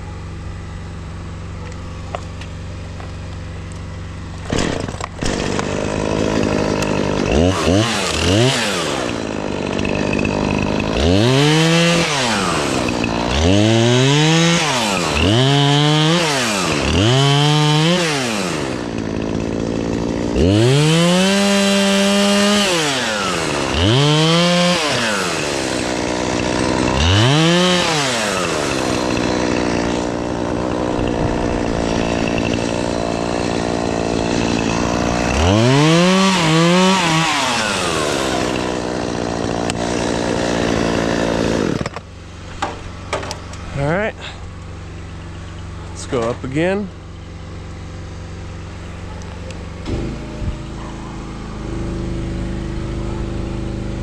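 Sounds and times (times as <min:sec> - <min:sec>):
chainsaw revving: 0:00.3 - 0:54.0.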